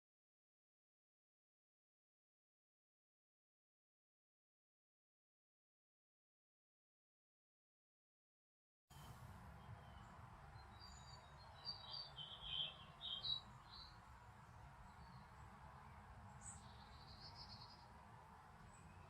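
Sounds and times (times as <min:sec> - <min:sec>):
faint low background noise: 0:08.9 - 0:19.0
songbird chirping: 0:09.0 - 0:19.0.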